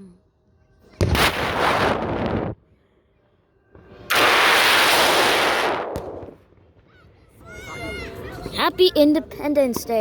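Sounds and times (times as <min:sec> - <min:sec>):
firework blast: 0:01.0 - 0:02.6, 0:04.0 - 0:06.8.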